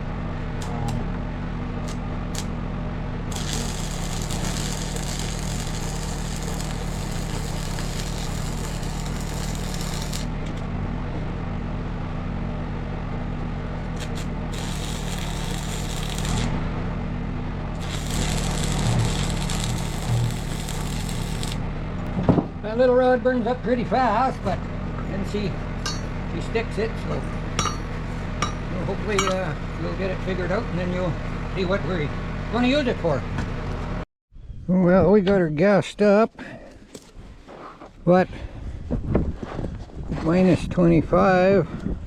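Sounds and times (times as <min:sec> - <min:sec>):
welding machine low hum: 0:00.1 - 0:10.8, 0:13.4 - 0:16.8, 0:17.6 - 0:22.1
welding arc crackling sizzle: 0:01.8 - 0:02.6, 0:03.3 - 0:10.4, 0:14.0 - 0:16.6, 0:17.8 - 0:21.7
welding rod striking ticks: 0:03.3 - 0:10.3, 0:14.0 - 0:16.5.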